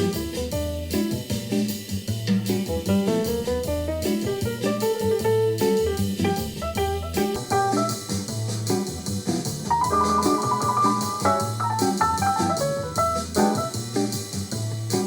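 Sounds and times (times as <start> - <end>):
drums with cymbal ticks: 0.0 - 15.0
instrumental jazz: 0.0 - 15.0
walking bass line: 0.0 - 15.0
keyboard chords: 9.7 - 14.4.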